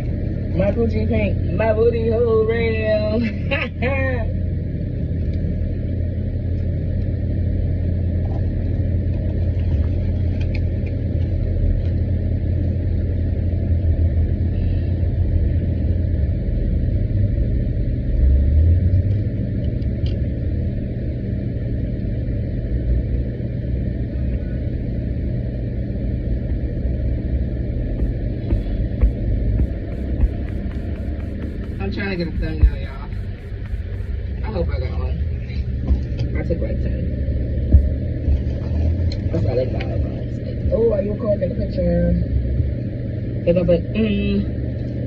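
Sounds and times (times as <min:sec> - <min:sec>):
car engine idling: 0:25.1 - 0:35.1.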